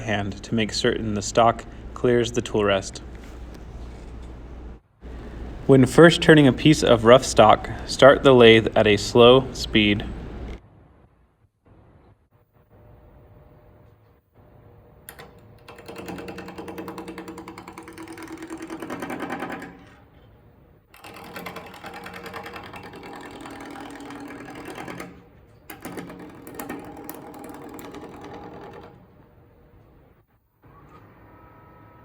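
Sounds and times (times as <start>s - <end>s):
turning tool chattering on wood: 0.0s - 10.6s, 15.1s - 20.0s, 21.0s - 29.2s
wood lathe running: 0.0s - 10.6s, 15.2s - 20.0s, 21.0s - 29.2s.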